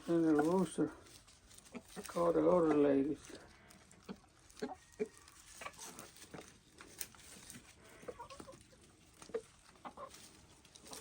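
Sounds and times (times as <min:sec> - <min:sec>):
hens clucking: 0:00.0 - 0:11.0.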